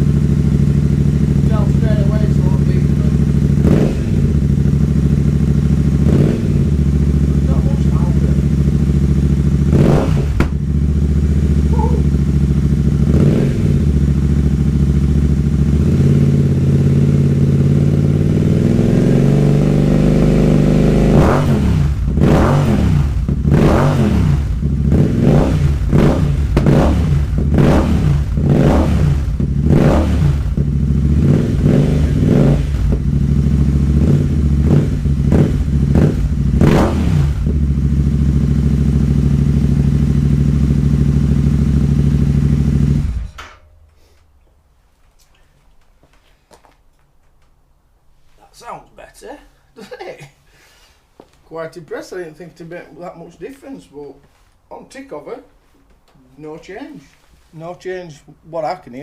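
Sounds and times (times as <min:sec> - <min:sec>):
motorcycle engine idling and revving: 0:00.0 - 0:43.6.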